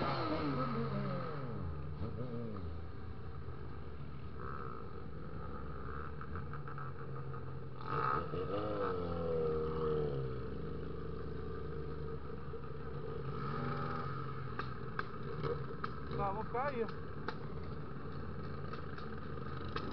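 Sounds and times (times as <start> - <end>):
motorcycle engine running: 0.0 - 19.9.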